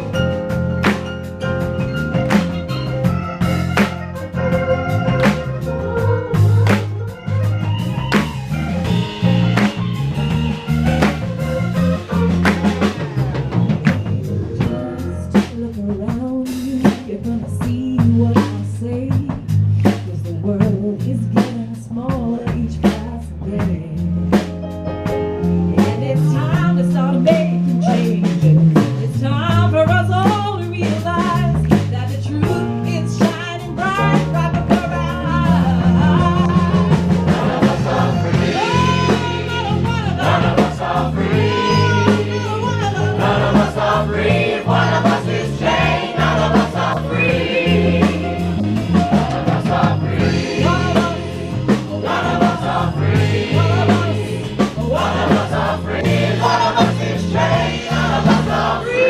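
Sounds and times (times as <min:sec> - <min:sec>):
gospel band playing: 0:00.0 - 0:59.0
voices singing with vibrato: 0:34.9 - 0:59.0.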